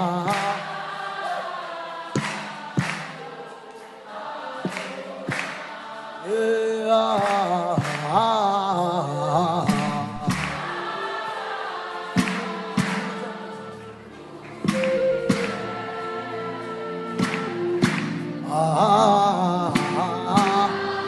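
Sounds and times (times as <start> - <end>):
congregation singing a chant: 0.0 - 21.0
sharp percussive hits: 2.1 - 3.5, 11.8 - 15.8.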